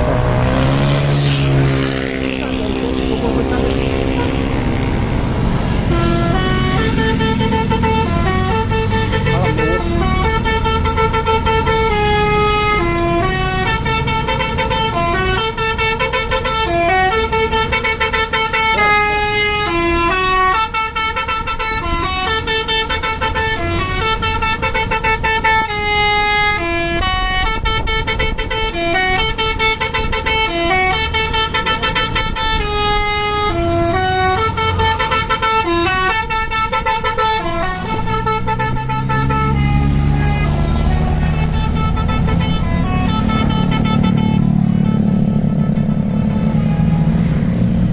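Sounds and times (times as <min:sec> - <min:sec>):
multi-tone air horn melody: 0:00.0 - 0:47.8
bus engine rumble: 0:00.0 - 0:47.9.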